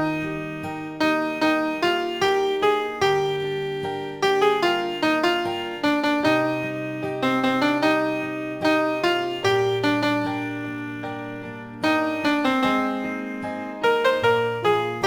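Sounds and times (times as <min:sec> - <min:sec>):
slow gentle piano melody: 0:00.0 - 0:15.0.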